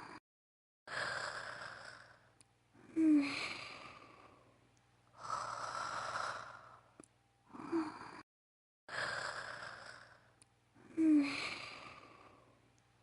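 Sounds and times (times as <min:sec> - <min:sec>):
woman snoring: 0:00.0 - 0:00.2, 0:00.9 - 0:04.4, 0:05.1 - 0:08.3, 0:08.9 - 0:12.5
snort: 0:00.9 - 0:02.3, 0:08.9 - 0:12.4.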